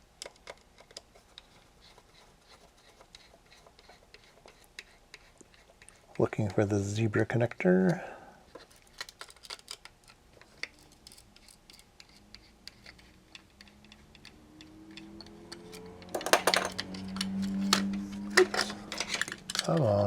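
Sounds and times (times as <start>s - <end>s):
plastic parts clicking and tapping: 8.6s - 14.3s, 16.0s - 17.0s, 17.6s - 19.9s
loud clicks and clatter: 16.1s - 17.1s.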